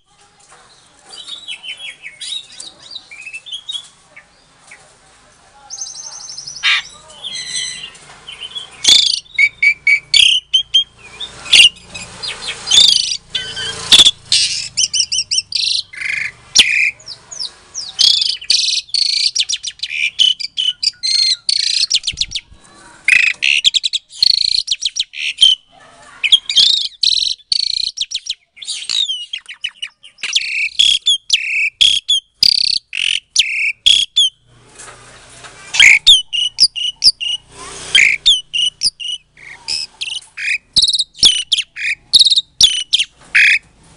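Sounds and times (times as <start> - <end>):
starling singing: 0.7 - 4.8, 5.7 - 34.5, 35.6 - 43.8.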